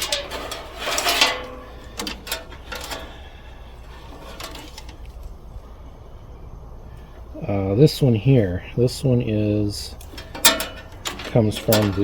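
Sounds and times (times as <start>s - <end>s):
clicks and rattles of metal parts: 0.0s - 3.3s, 3.9s - 5.3s, 10.0s - 12.0s
low steady hum: 0.0s - 12.0s.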